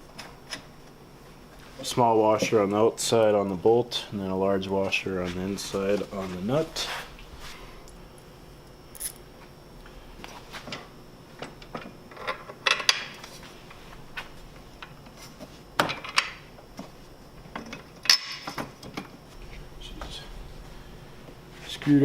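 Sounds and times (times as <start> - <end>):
bolts and nuts clinking: 17.5 - 18.6.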